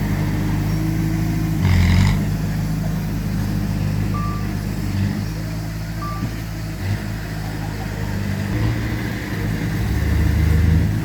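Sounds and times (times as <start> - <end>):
diesel engine running: 0.0 - 11.0
reversing beep: 4.1 - 4.7, 6.0 - 6.5.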